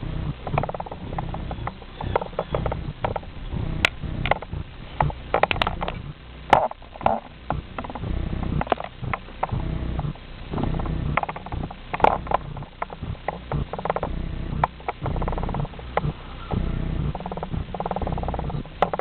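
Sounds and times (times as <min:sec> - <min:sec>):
wheels clacking on rail joints: 0:00.4 - 0:09.6.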